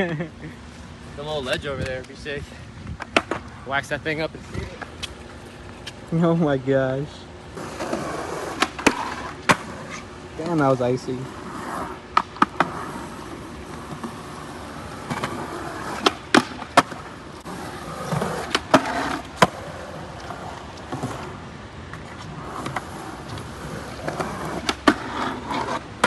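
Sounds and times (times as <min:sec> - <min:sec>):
skateboard wheels rolling on wet concrete: 0:03.0 - 0:26.0
skateboard pops and landings: 0:07.8 - 0:09.7, 0:15.0 - 0:17.1, 0:22.5 - 0:26.0.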